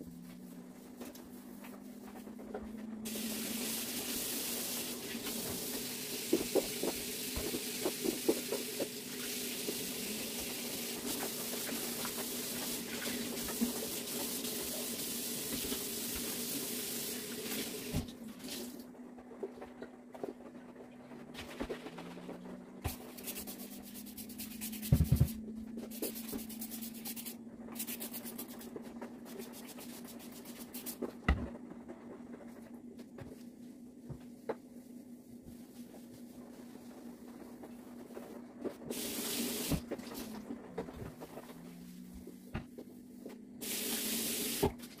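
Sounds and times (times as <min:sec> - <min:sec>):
steady low hum: 0:00.0 - 0:04.1, 0:18.1 - 0:38.9, 0:39.8 - 0:43.6
water running from a tap: 0:03.1 - 0:18.8, 0:38.9 - 0:39.8, 0:43.6 - 0:44.8.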